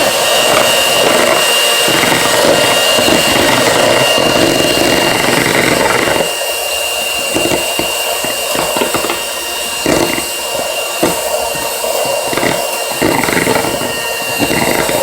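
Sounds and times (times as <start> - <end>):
electric hand mixer whirring: 0.0 - 15.0
beaters knocking against bowl: 7.2 - 15.0.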